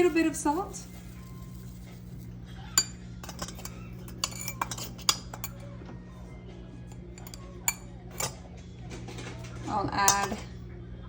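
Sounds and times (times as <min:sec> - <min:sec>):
spoon clinking against bowl: 0:00.6 - 0:05.7, 0:06.9 - 0:08.4, 0:10.0 - 0:10.4.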